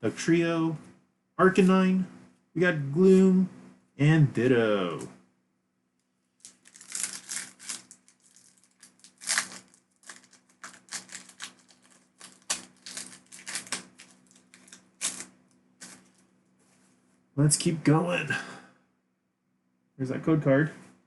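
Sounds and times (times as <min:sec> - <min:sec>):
foil wrapper crinkling: 0:06.4 - 0:16.3
trading cards being handled: 0:06.4 - 0:16.8.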